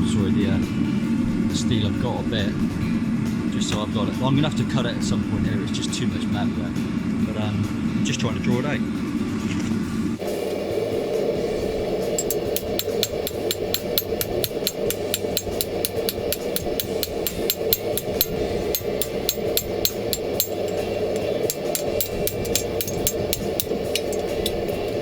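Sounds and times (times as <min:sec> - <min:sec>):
hammer striking steel on anvil: 0:12.1 - 0:25.0.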